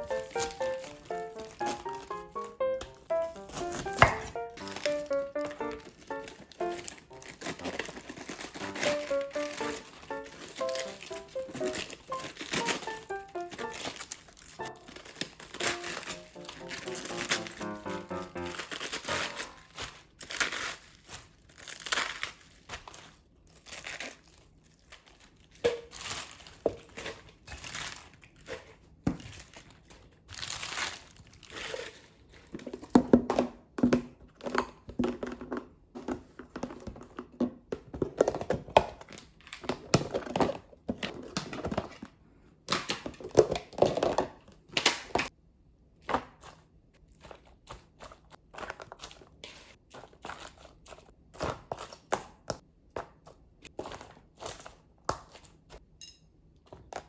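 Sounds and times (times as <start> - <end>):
utensils and containers clattering: 0.0 - 14.0, 14.6 - 19.7
plastic packaging crinkling: 0.0 - 33.0.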